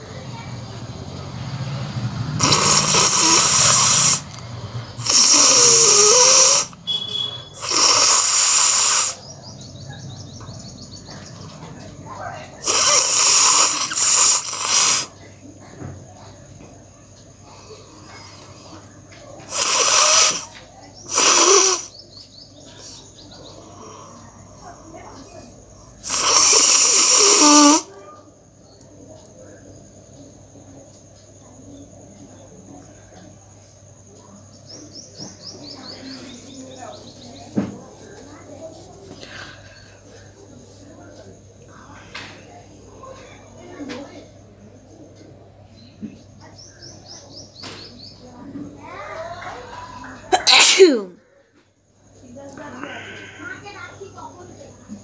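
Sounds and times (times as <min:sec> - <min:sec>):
person blowing nose: 0:02.4 - 0:04.3, 0:05.0 - 0:09.2, 0:12.6 - 0:15.1, 0:19.5 - 0:20.5, 0:21.1 - 0:21.9, 0:26.0 - 0:27.9.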